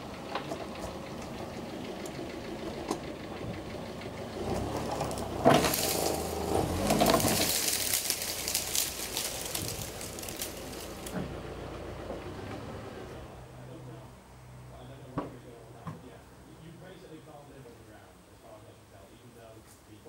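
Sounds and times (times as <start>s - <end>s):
car engine revving: 0.0s - 14.7s
tree crackling and tearing: 4.3s - 11.6s
sharp crack of wood: 5.0s - 11.2s.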